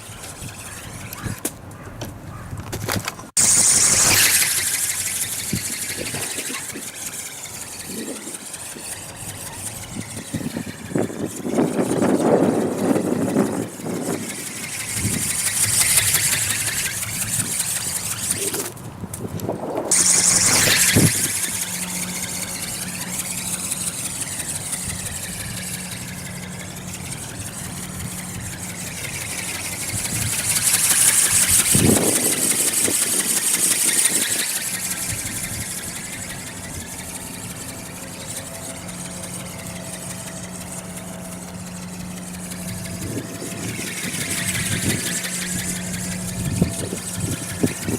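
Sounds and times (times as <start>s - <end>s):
small motor whirring: 0.0s - 1.5s, 2.9s - 47.9s
rushing noise: 19.9s - 37.5s.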